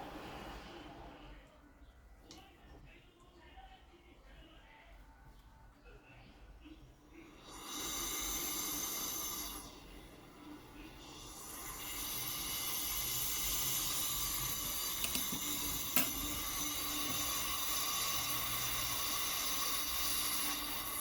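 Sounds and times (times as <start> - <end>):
gas hissing from a pipe: 0.0 - 1.4, 7.0 - 21.0.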